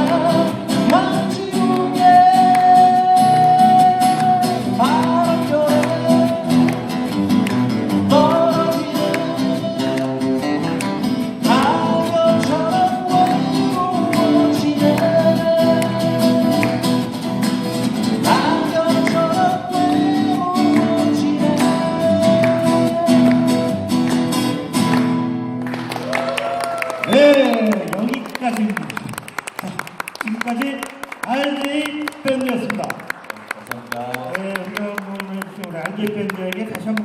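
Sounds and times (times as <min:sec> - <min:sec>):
person singing: 0:00.0 - 0:06.9, 0:08.0 - 0:17.0, 0:18.2 - 0:24.1
strummed acoustic guitars: 0:00.0 - 0:25.8.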